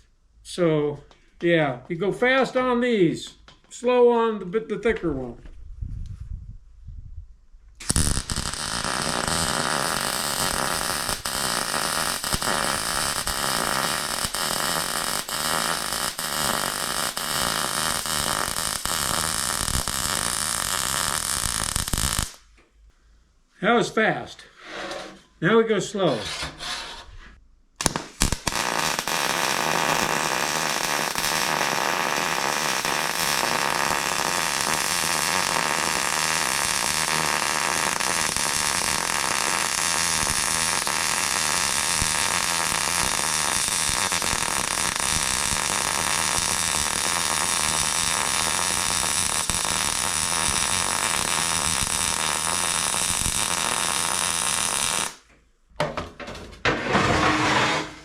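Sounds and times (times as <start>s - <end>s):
welding arc sputters: 7.8s - 22.4s, 27.8s - 55.2s
welding arc sizzling: 7.8s - 22.5s, 27.8s - 55.2s.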